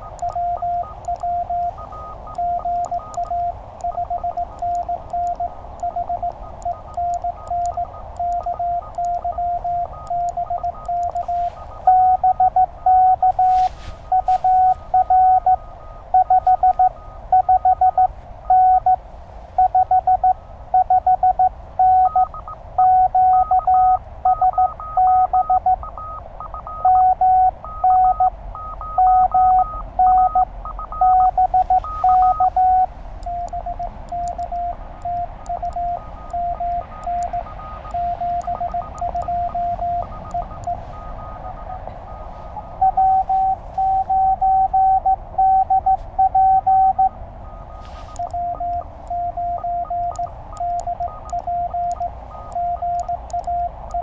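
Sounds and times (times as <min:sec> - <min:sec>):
faint clicks: 0:00.0 - 0:19.0, 0:30.8 - 0:54.0
morse code tone: 0:00.0 - 0:19.0, 0:19.6 - 0:54.0.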